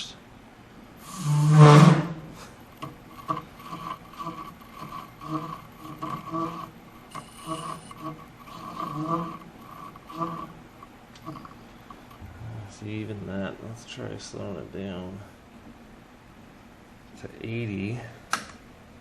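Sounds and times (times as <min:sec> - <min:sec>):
lathe blade chattering: 0:02.8 - 0:12.2.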